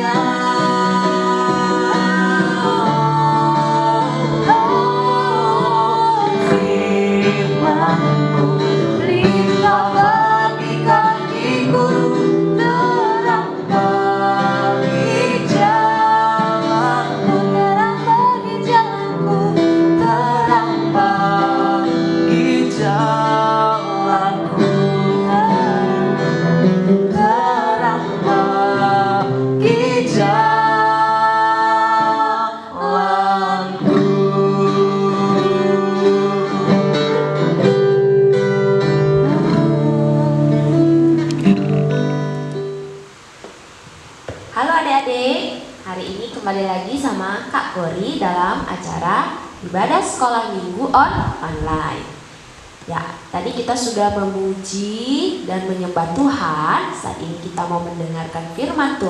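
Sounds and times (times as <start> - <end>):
woman singing: 0.0 - 37.2, 39.2 - 41.1, 52.9 - 59.0
guitar accompaniment: 0.0 - 59.0.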